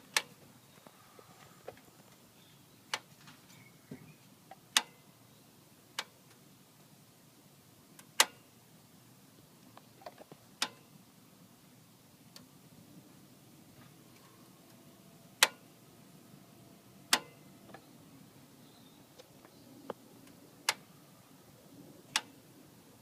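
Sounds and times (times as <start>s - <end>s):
sharp metallic ticking clicks: 4.7s - 5.0s.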